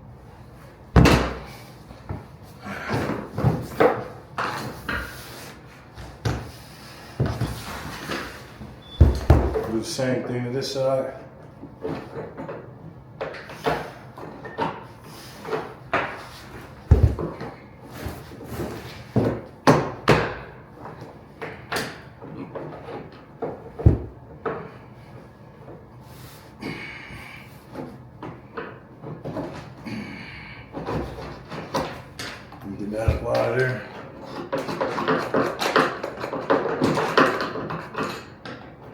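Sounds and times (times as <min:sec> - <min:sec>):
heavy thuds: 0:08.9 - 0:09.8, 0:16.8 - 0:17.4
knocks and scrapes on vinyl flooring: 0:15.5 - 0:20.3.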